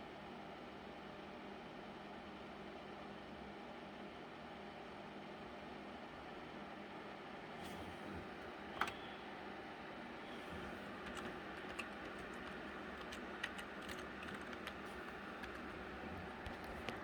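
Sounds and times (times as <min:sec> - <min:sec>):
computer fans whirring: 0:07.3 - 0:17.0
computer keyboard typing: 0:10.3 - 0:17.0.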